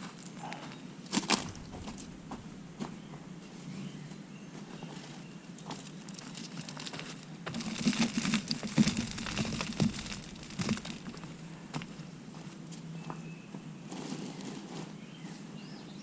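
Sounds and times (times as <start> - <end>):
plastic bag crinkling: 1.4 - 3.0, 6.2 - 12.1
steady low hum: 1.4 - 4.6, 7.3 - 12.8.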